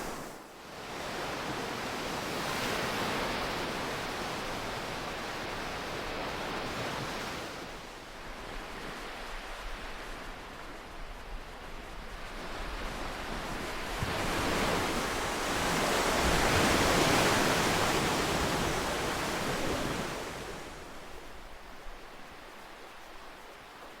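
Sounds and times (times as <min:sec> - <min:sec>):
ocean waves breaking: 0:00.0 - 0:00.4, 0:11.8 - 0:23.9.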